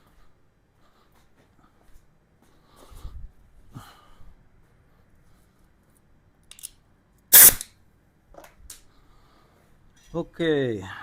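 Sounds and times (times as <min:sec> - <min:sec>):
compressed air hissing from hose: 0:07.3 - 0:07.6.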